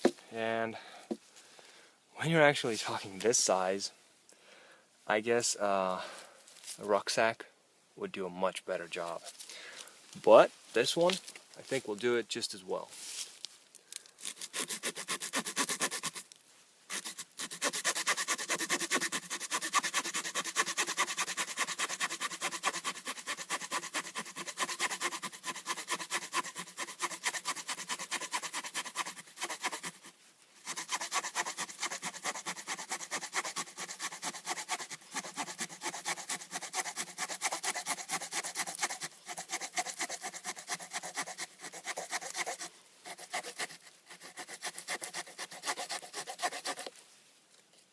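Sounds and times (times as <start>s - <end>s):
small saw cutting wood: 14.2s - 16.3s, 16.9s - 47.0s.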